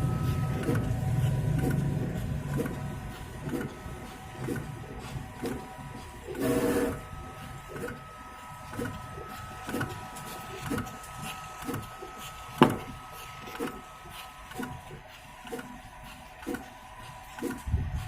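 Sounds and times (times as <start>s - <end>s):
cutter head sweeping moves: 0.0s - 18.0s
cutting plotter motor whine: 0.0s - 18.0s.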